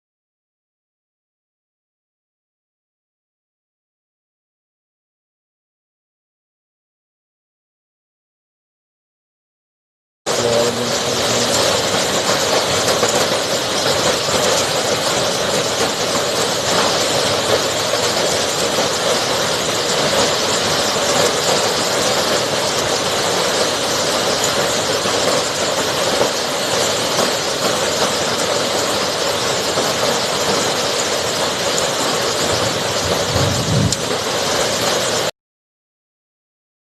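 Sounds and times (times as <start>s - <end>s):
hail falling heavily: 10.3s - 35.3s.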